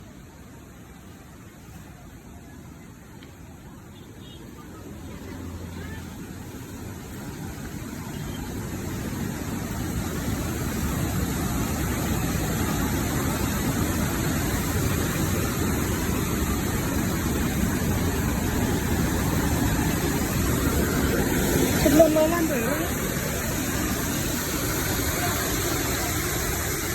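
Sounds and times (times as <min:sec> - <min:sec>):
waterfall rushing: 0:00.0 - 0:26.9.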